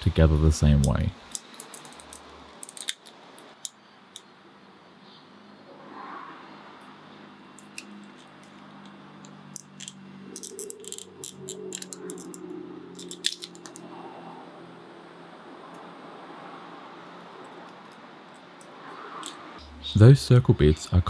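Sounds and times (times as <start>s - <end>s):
low steady hum: 0.0s - 3.6s, 19.6s - 21.0s
plastic and metal clicks: 0.8s - 3.7s, 7.6s - 8.5s, 9.2s - 12.4s, 13.0s - 13.8s.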